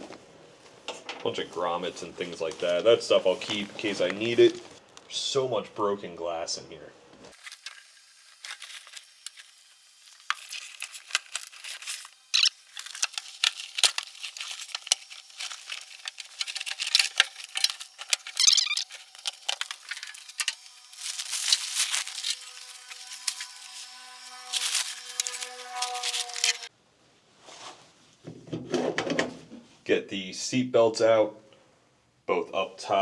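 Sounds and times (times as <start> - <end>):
debris and broken glass scraped up: 7.4 - 26.7.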